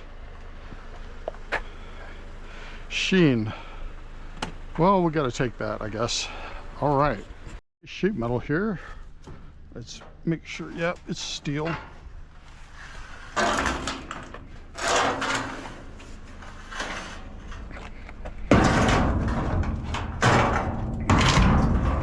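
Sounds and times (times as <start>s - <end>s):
sheet metal scraping and clattering: 9.3s - 22.0s.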